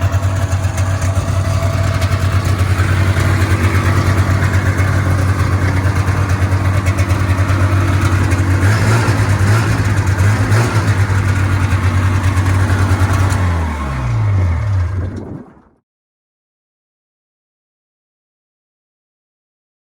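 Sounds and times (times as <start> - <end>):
snowmobile engine idling: 0.0 - 15.2.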